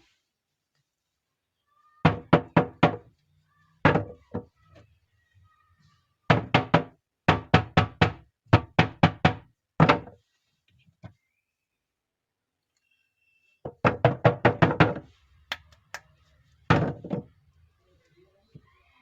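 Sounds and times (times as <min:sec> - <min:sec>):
sharp knocks on hard surface: 0:13.7 - 0:15.1.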